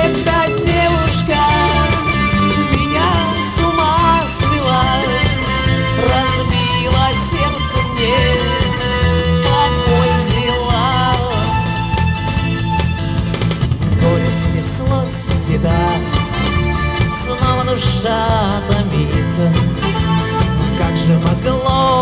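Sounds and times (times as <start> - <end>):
bass: 0.0 - 22.0
drum kit beat: 0.0 - 22.0
lead guitar melody with bends: 0.0 - 22.0.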